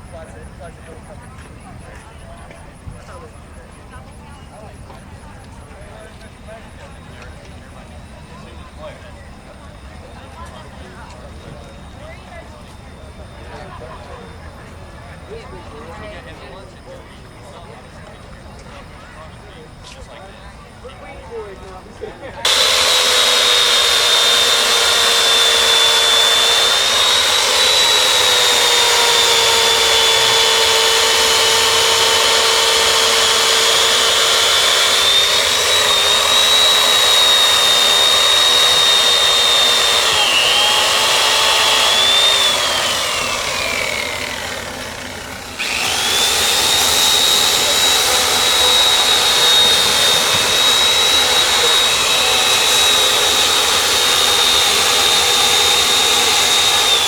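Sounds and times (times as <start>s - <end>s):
power tool high whine: 22.4s - 57.0s.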